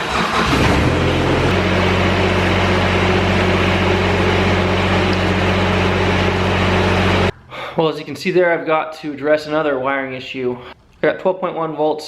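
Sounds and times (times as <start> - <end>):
diesel mower engine running: 0.0 - 7.6.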